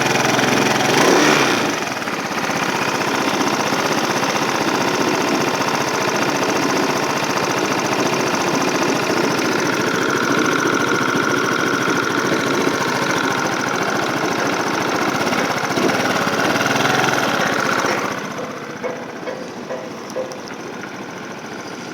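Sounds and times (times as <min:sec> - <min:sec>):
scooter engine running: 0:00.0 - 0:21.9.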